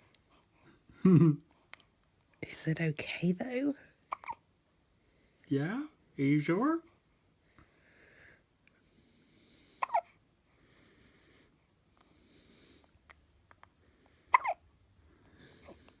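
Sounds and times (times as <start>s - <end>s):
baby hiccuping: 4.1s - 4.4s, 9.8s - 10.1s, 14.3s - 14.6s
faint breathing: 7.4s - 9.9s, 10.5s - 13.1s, 15.0s - 16.0s.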